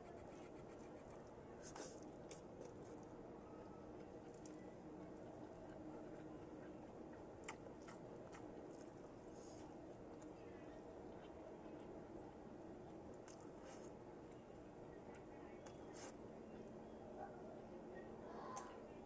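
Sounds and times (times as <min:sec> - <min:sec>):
chewing and biting vegetables: 0:04.2 - 0:11.9.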